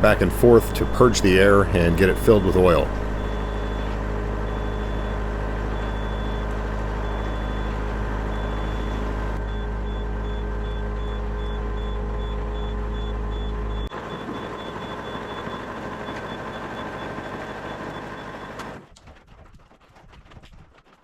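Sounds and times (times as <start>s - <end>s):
deep hum: 0.0s - 14.4s
hydraulic cylinder working: 0.0s - 18.8s
excavator diesel engine running: 0.0s - 18.9s.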